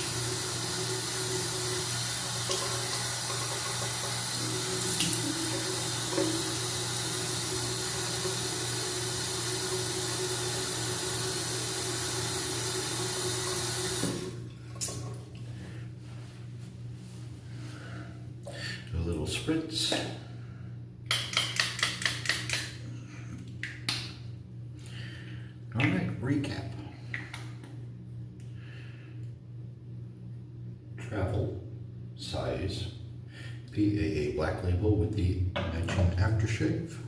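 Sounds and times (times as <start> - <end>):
tap water running into sink: 0.0 - 15.2.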